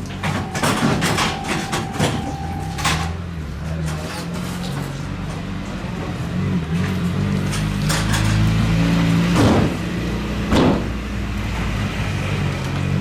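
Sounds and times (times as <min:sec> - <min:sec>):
short noisy knocks: 0:00.2 - 0:03.2, 0:10.5 - 0:11.0.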